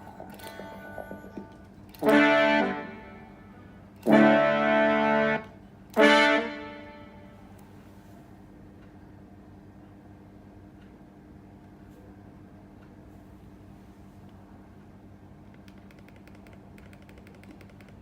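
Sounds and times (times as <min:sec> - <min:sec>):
synthesizer brass stabs: 0:02.0 - 0:07.2.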